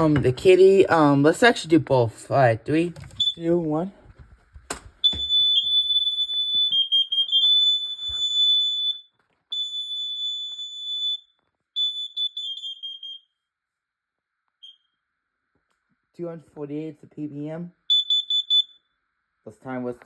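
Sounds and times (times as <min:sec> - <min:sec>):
home alarms high test tones: 0:03.1 - 0:03.6, 0:05.0 - 0:13.5, 0:14.6 - 0:15.0, 0:17.8 - 0:19.0.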